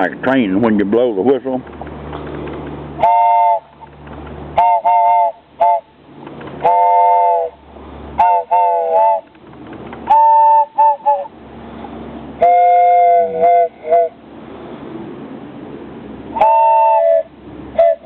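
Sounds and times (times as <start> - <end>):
wooden train whistle toots: 3.0 - 3.8, 4.5 - 5.9, 6.6 - 9.3, 10.0 - 11.3, 12.4 - 14.2, 16.3 - 18.0.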